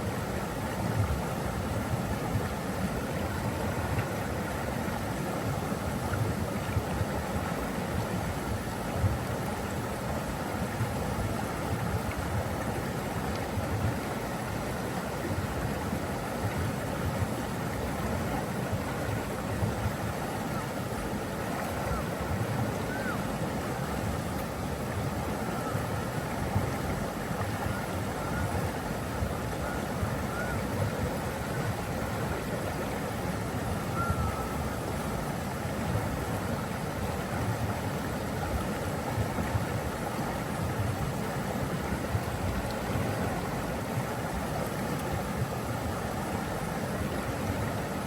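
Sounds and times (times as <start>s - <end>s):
rushing water: 0.0s - 48.0s.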